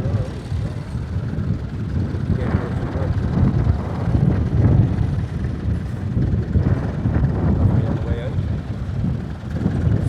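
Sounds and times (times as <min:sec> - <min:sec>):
tractor engine throbbing: 0:00.0 - 0:10.0.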